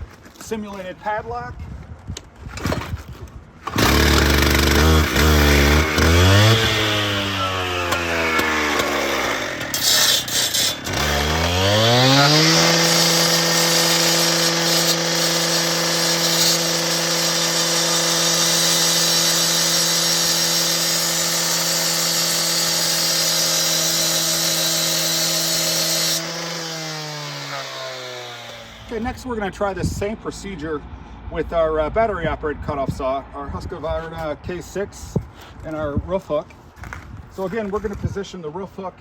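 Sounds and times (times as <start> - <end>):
blade grinding through steel: 3.7 - 29.0
cutoff saw engine revving: 3.7 - 29.1.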